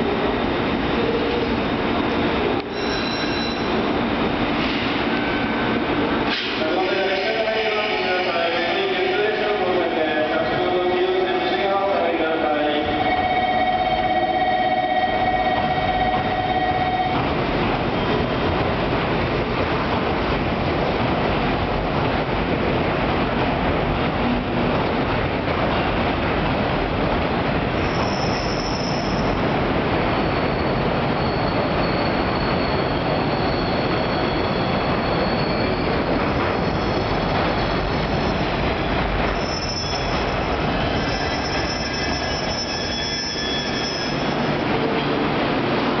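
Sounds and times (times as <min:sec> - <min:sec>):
train wheels rumbling on rails: 0:00.0 - 0:46.0
high wheel squeals: 0:02.7 - 0:03.8, 0:27.8 - 0:29.4, 0:30.2 - 0:38.5, 0:39.2 - 0:44.6.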